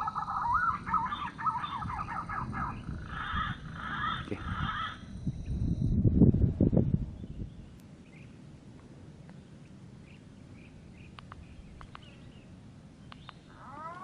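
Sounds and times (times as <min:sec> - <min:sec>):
small birds chirping faintly: 0:00.0 - 0:05.9, 0:07.1 - 0:14.0
sharp light clicks: 0:11.1 - 0:12.1, 0:13.1 - 0:13.4.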